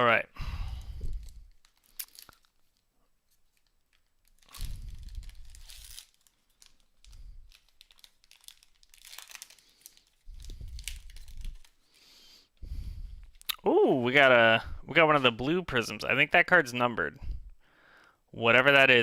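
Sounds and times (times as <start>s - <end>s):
plastic wrapper tearing and crinkling: 1.0s - 12.0s.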